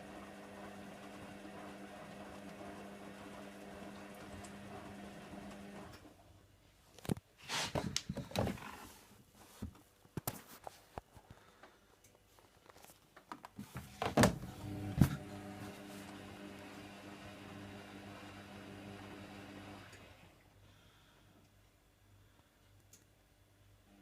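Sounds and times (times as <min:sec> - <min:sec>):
washing machine motor hum: 0:00.0 - 0:06.0, 0:13.8 - 0:20.4.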